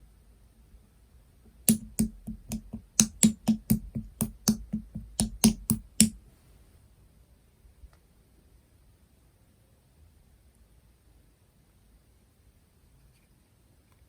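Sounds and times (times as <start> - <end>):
slime clicking pops: 1.7 - 6.2.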